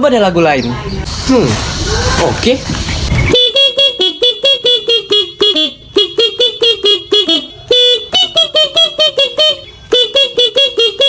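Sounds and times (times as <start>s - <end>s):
multi-tone motorcycle horn tune: 3.3s - 11.0s.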